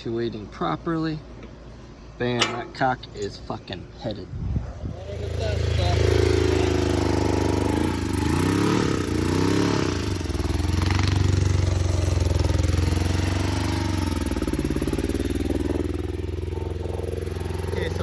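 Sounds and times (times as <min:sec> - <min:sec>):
motorcycle engine revving: 0:05.0 - 0:18.0.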